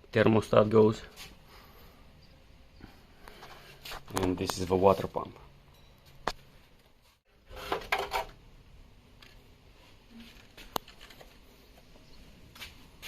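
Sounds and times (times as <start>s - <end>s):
rustling and clattering handling: 9.2s - 11.9s.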